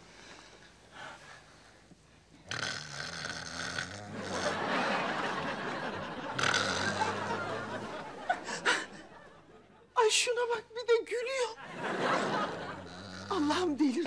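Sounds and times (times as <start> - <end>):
noisy breath: 0.0 - 2.3
man snoring loudly: 2.4 - 5.2, 6.2 - 7.9, 12.7 - 13.7.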